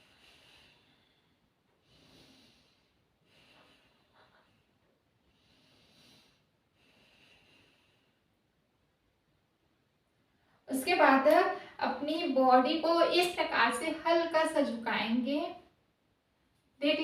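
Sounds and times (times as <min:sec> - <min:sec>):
woman breathing deeply: 0:00.0 - 0:08.6.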